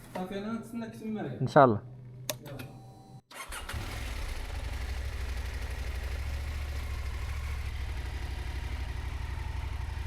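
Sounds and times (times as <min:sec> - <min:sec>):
motorcycle engine idling: 0:03.9 - 0:10.0.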